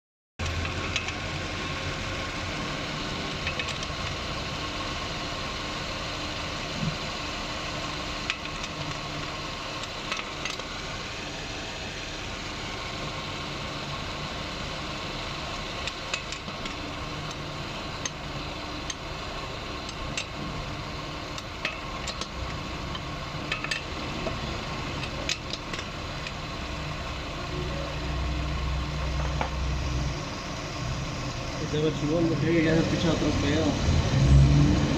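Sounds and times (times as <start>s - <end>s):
alternator whine: 0.4s - 34.9s
car engine idling: 0.4s - 34.9s.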